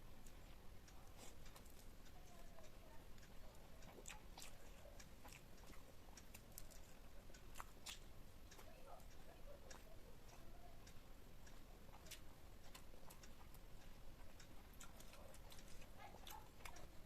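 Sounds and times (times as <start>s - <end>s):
person chewing food: 0.0s - 17.0s
mouth clicks and smacks: 3.8s - 17.0s.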